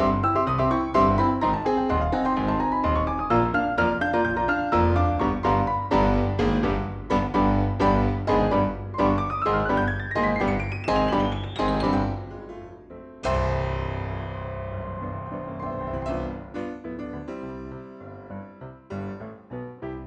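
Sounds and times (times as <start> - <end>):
piano music: 0.0 - 20.0.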